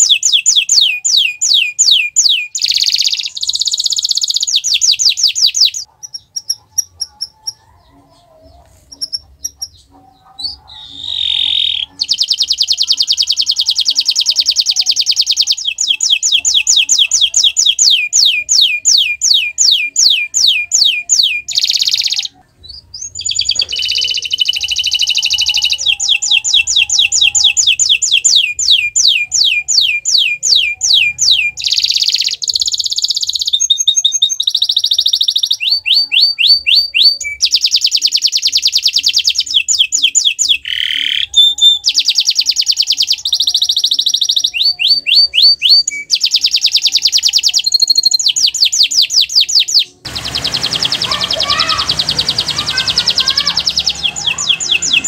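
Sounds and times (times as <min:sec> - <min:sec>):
bird chirps: 0:00.0 - 0:55.0
canary singing trills: 0:00.0 - 0:55.0.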